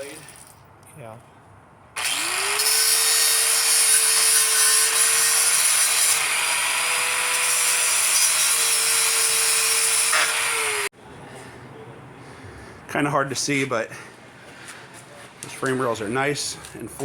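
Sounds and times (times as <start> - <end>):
grinder cutting steel: 2.0 - 10.9.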